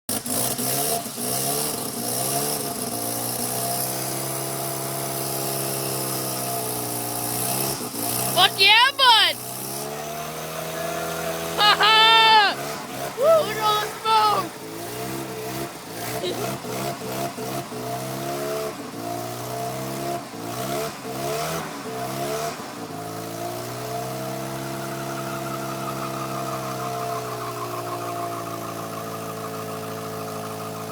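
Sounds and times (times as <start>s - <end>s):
rotary engine blipping: 23.7s - 30.9s.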